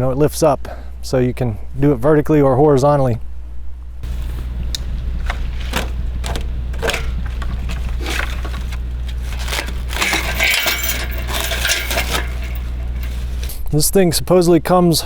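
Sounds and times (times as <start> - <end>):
low hum: 4.0 - 13.6
metal clinks and rattling: 4.0 - 13.6.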